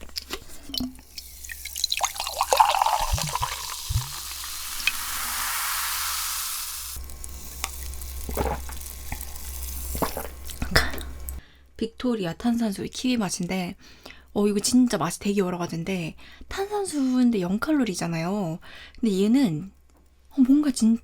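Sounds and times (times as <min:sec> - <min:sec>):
sparkling water fizzing in glass: 0:00.7 - 0:10.7.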